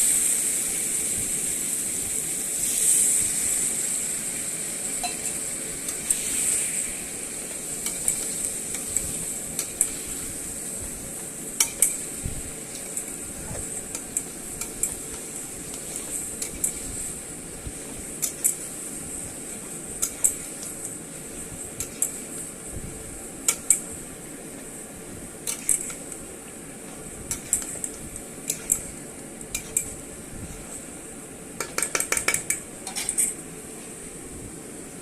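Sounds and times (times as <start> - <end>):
steady cooking hiss: 0.0 - 35.0
metal spoon clinking on pot: 5.0 - 6.0, 11.6 - 12.0, 28.5 - 28.9, 31.6 - 33.4.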